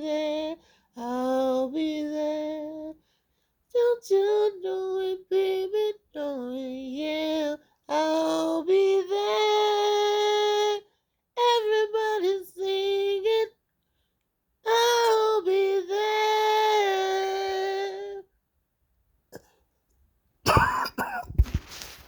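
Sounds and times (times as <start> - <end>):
high voice singing unaccompanied: 0.0 - 3.0, 3.7 - 13.6, 14.6 - 18.3
loud coughs: 19.3 - 19.6, 20.4 - 21.4.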